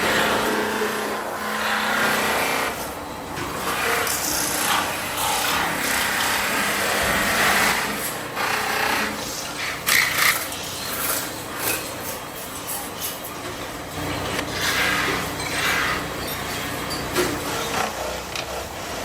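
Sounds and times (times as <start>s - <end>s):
tool scraping and rubbing: 14.0s - 19.0s.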